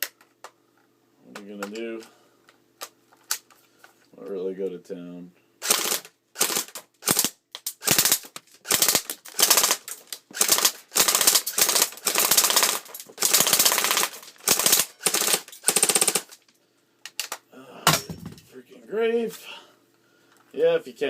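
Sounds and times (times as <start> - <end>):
airsoft gun rapid fire bursts: 5.6 - 16.4.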